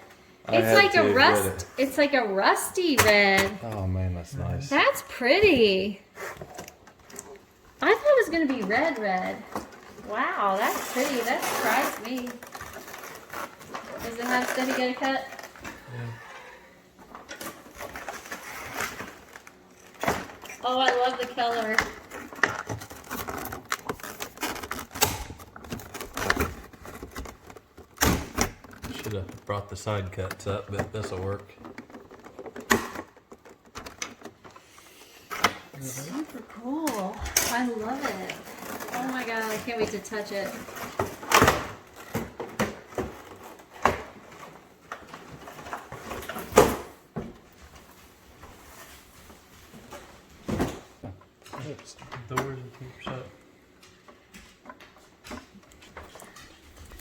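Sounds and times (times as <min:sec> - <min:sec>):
crinkling rustles: 0:04.4 - 0:57.0
packaging rustling: 0:06.2 - 0:16.0, 0:17.1 - 0:29.6.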